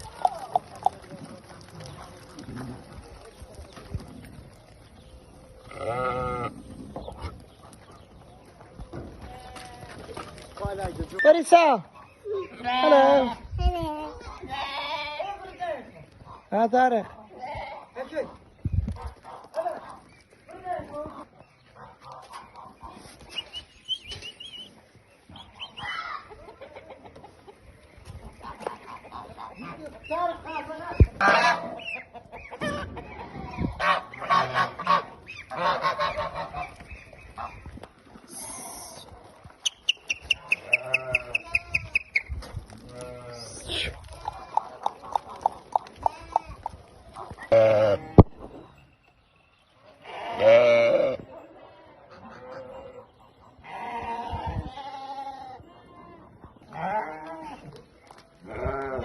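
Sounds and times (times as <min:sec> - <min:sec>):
sheep bleating: 0:05.7 - 0:06.6, 0:09.2 - 0:10.0, 0:12.5 - 0:13.4, 0:14.4 - 0:15.5, 0:40.5 - 0:42.0, 0:42.8 - 0:44.6, 0:47.5 - 0:48.3, 0:50.0 - 0:51.2, 0:53.6 - 0:57.6, 0:58.4 - 0:59.0
geese honking: 0:31.2 - 0:37.6.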